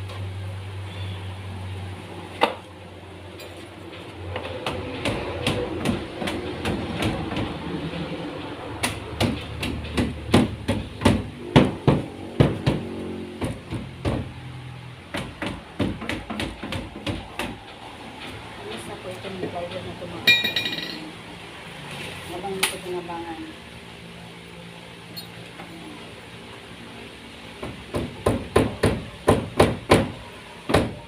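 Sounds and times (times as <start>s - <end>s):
hammer striking wood: 8.8s - 14.3s, 15.1s - 17.6s, 27.6s - 31.0s.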